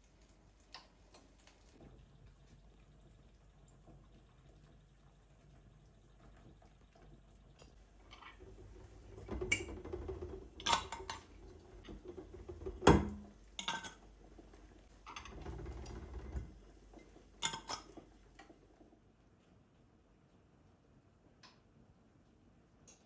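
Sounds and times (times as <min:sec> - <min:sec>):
dishes and cutlery clinking: 0:12.9 - 0:14.0, 0:17.4 - 0:18.0.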